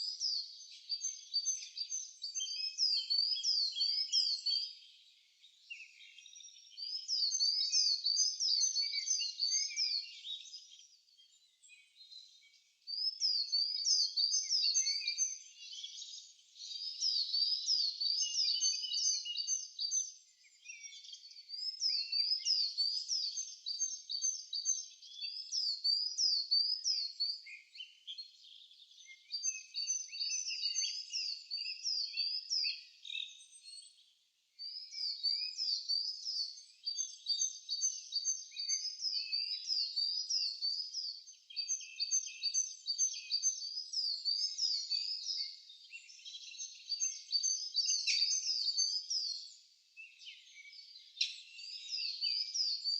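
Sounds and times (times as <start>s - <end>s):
songbird chirping: 0.0s - 52.9s.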